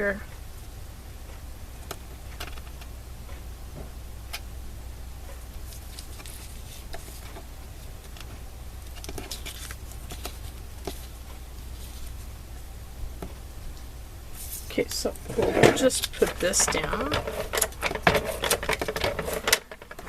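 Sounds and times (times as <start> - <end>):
steady low hum: 0.0 - 20.0
paper rustling: 5.6 - 7.4, 8.9 - 12.3, 14.3 - 20.0.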